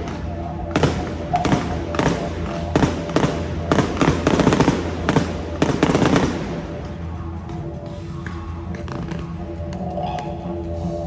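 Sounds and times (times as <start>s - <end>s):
fireworks bursting: 0.0s - 7.2s.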